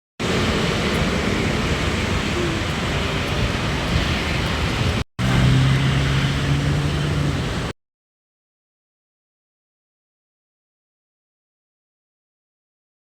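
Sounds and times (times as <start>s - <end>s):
steady rushing background noise: 0.2s - 7.7s.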